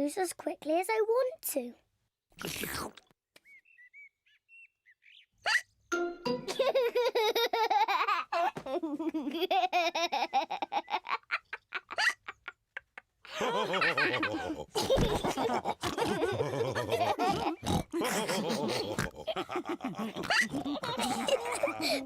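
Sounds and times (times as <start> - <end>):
gulping juice: 2.4 - 3.1, 15.8 - 19.4
cartoon pigs laughing and snorting: 6.5 - 22.0.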